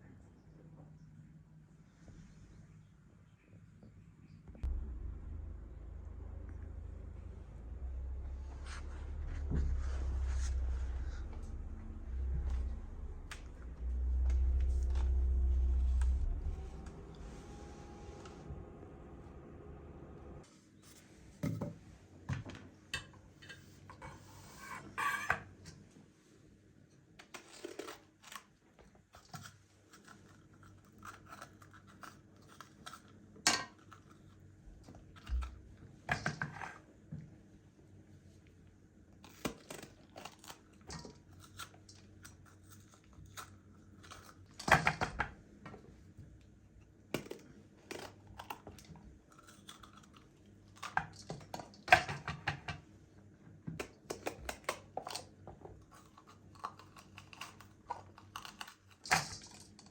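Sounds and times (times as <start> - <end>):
faint steady hum: 0.0 - 27.0
objects scraping and rustling: 7.6 - 19.0, 23.4 - 25.5.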